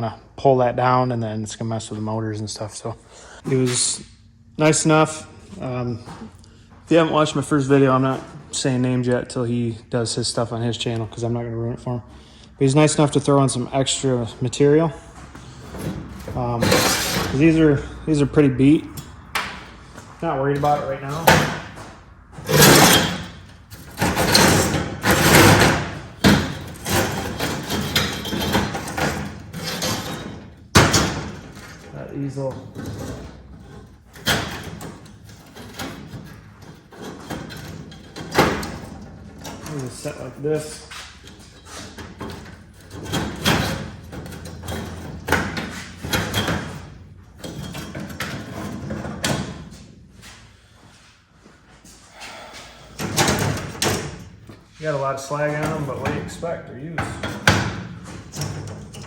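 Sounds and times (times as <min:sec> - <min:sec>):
metal slats clanking and scraping: 0:15.0 - 0:50.5, 0:52.3 - 0:59.0.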